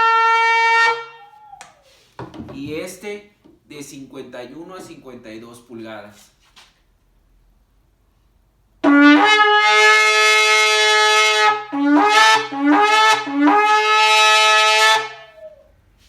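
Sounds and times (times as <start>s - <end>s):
shofar blasts: 0.0s - 2.0s, 8.8s - 15.7s.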